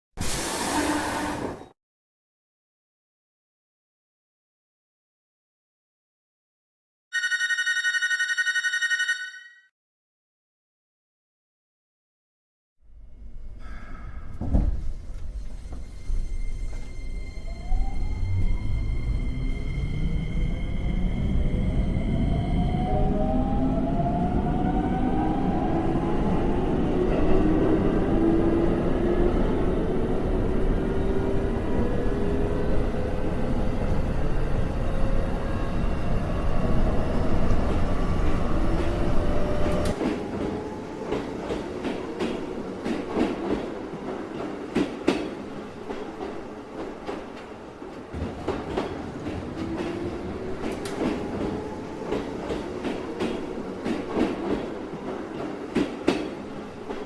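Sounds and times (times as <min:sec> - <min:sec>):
railcar low rumble: 0:12.8 - 0:57.0.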